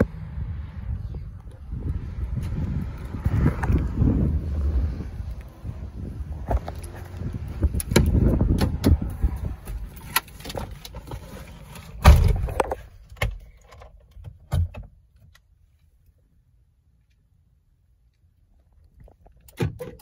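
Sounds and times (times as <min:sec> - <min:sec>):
low rumble: 0:00.0 - 0:10.0
handling noise clicks and rustling: 0:06.4 - 0:15.9.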